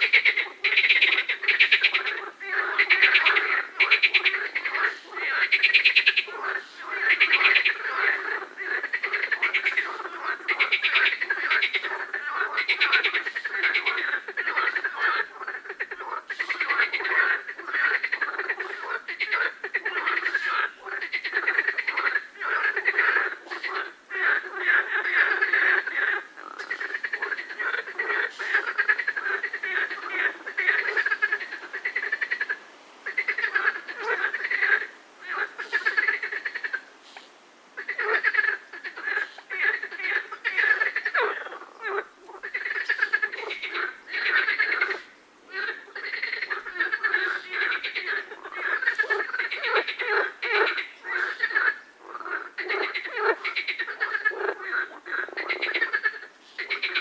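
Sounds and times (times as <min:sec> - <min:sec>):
frogs croaking: 0:00.0 - 0:57.0.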